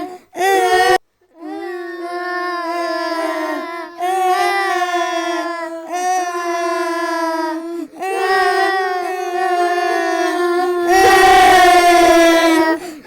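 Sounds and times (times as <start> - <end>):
girls crying: 0.0 - 13.0
gasps for breath: 12.8 - 13.0.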